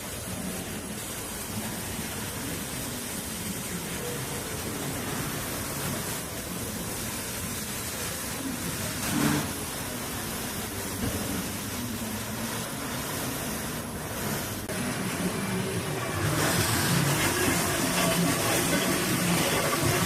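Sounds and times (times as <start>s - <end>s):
sanding machine running: 13.8s - 20.0s.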